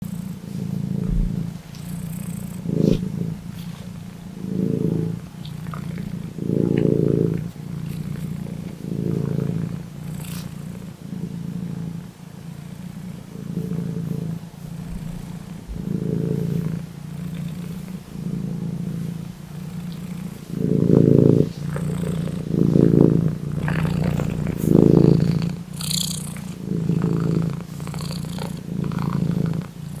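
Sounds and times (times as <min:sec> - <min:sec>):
cat purring: 0:00.0 - 0:30.0.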